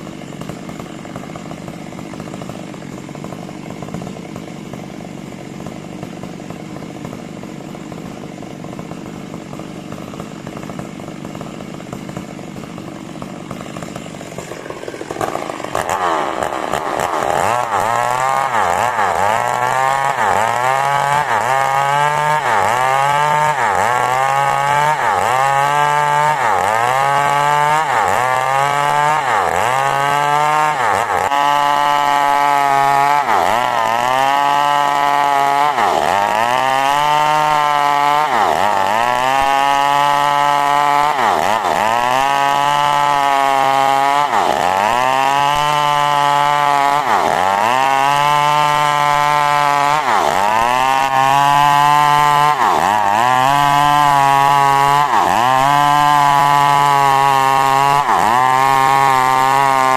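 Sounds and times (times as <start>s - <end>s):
chainsaw cutting wood: 0.0s - 59.9s.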